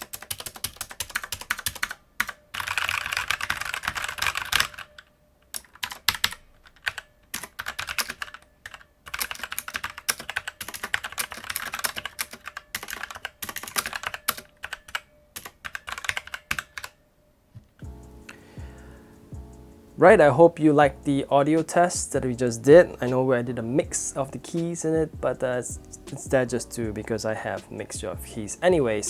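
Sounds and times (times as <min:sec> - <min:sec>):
mechanical keyboard typing: 0:00.0 - 0:17.0
background music: 0:17.8 - 0:29.0.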